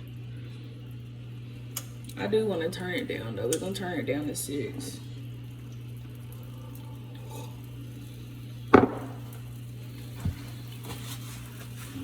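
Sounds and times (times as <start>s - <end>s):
steady low hum: 0.0s - 12.0s
soft knock: 8.8s - 9.3s
kitchenware clacking: 8.8s - 9.4s.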